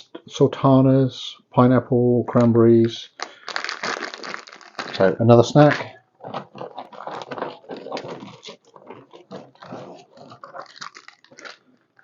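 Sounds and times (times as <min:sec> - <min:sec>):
plastic packets crinkling: 0:02.8 - 0:12.0.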